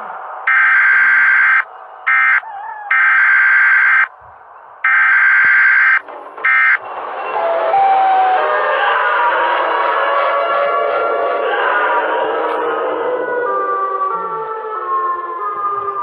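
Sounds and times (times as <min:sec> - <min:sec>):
buzzing alarm siren blasts: 0:00.5 - 0:04.1, 0:04.8 - 0:06.8.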